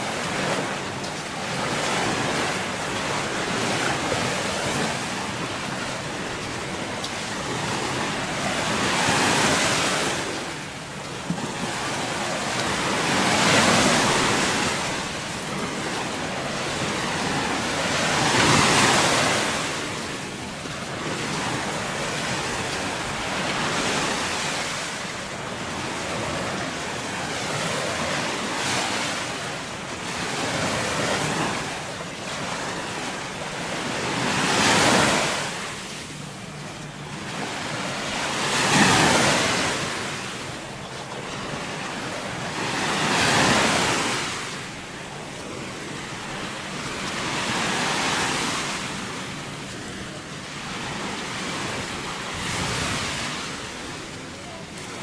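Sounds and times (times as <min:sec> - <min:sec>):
waves breaking on beach: 0:00.0 - 0:55.0.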